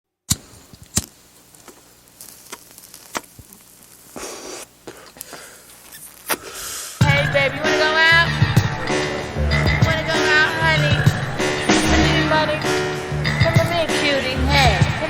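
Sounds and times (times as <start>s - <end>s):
hiss swells: 0.3s - 7.0s.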